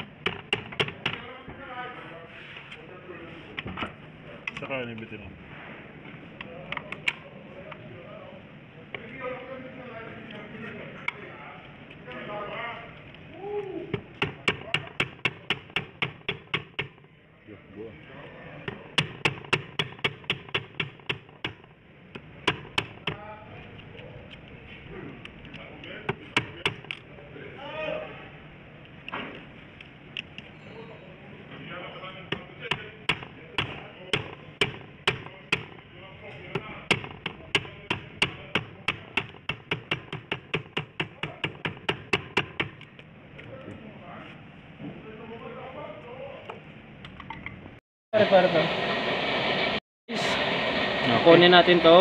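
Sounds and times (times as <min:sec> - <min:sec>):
hammer tapping on metal: 0:13.9 - 0:17.1, 0:18.7 - 0:23.2, 0:36.5 - 0:42.9.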